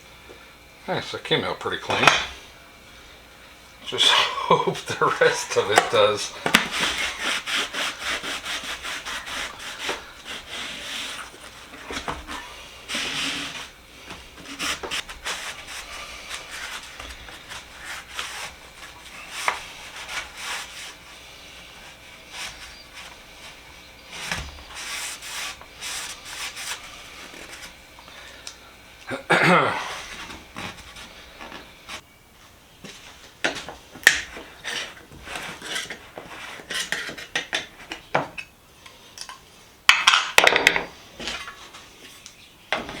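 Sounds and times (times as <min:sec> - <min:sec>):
rubbing and scraping strokes: 0:04.8 - 0:27.8.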